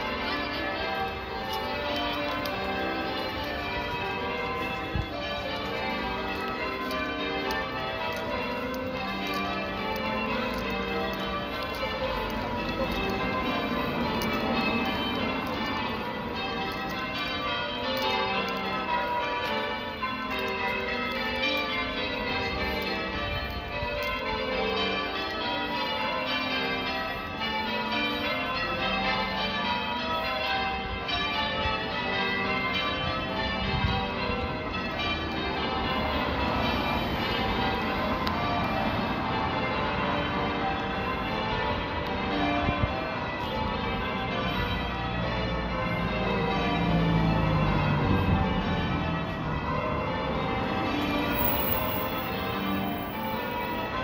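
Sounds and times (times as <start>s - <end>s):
church bells ringing: 0.0s - 54.0s.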